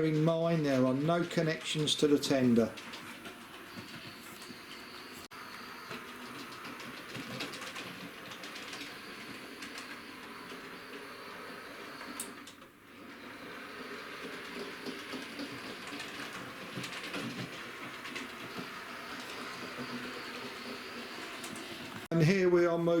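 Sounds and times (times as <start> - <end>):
model train motor whirring: 0.0 - 22.1
wheels clicking over rail joints: 0.0 - 22.2.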